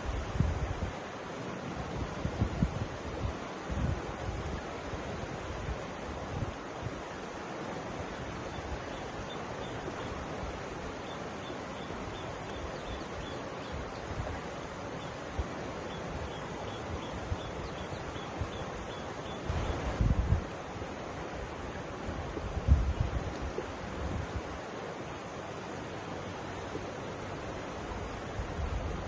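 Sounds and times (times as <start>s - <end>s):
river water rushing: 0.0s - 29.0s
wind gusts on microphone: 0.0s - 29.0s
faint high-pitched ticking: 11.0s - 13.7s.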